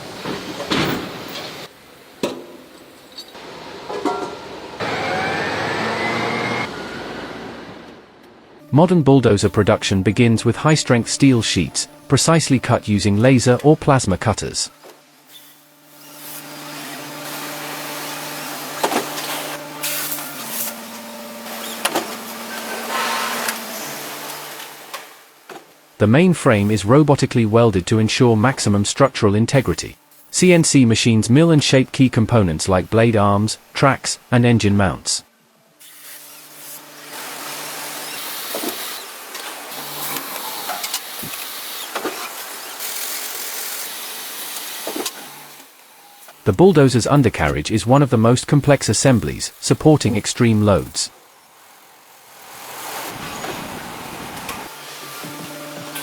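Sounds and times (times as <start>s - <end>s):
machinery motor hum: 3.4s - 25.4s, 52.9s - 56.0s.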